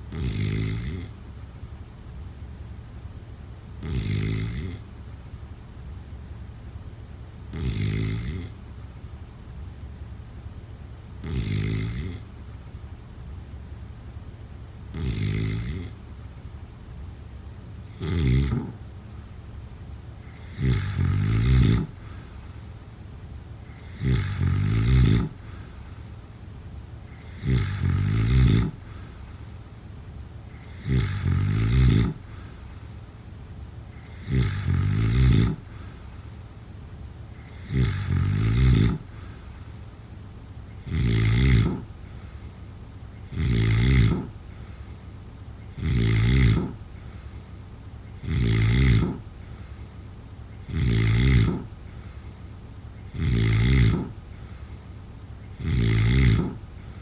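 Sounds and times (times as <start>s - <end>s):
person snoring: 0.0s - 1.1s, 3.8s - 4.8s, 7.6s - 8.5s, 11.2s - 12.2s, 18.0s - 18.8s, 20.2s - 22.5s, 23.6s - 25.9s, 27.1s - 29.3s, 30.5s - 32.8s, 33.9s - 36.2s, 37.4s - 39.6s, 40.8s - 42.4s, 43.2s - 44.8s, 45.7s - 47.2s, 48.2s - 49.8s, 50.7s - 52.2s, 53.0s - 54.6s, 55.5s - 57.0s.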